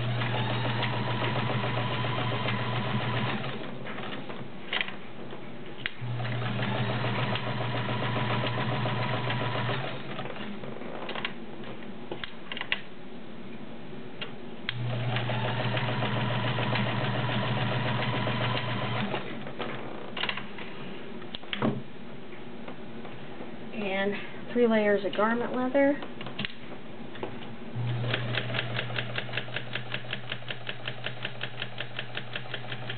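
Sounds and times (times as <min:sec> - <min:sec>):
sewing machine stitching: 0:00.0 - 0:04.2, 0:05.9 - 0:10.6, 0:14.7 - 0:19.5, 0:27.8 - 0:32.9.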